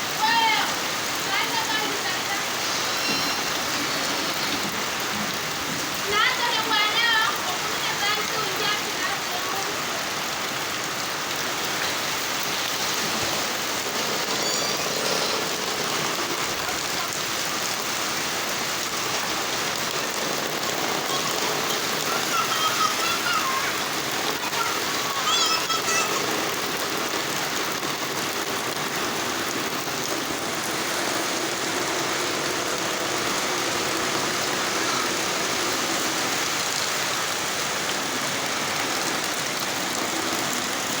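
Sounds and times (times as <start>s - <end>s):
rain pouring and splashing: 0.0s - 41.0s
high wavering calls: 1.9s - 5.0s, 13.9s - 16.2s.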